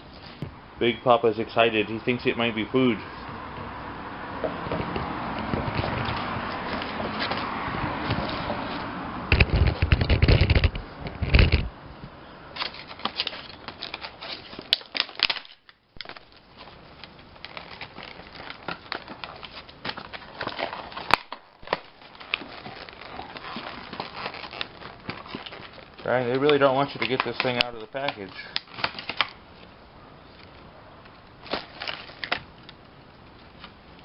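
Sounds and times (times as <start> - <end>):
handling bumps and rustling: 4.4 - 11.7, 12.6 - 29.4
packaging crinkling and tearing: 12.6 - 29.4, 31.4 - 32.5.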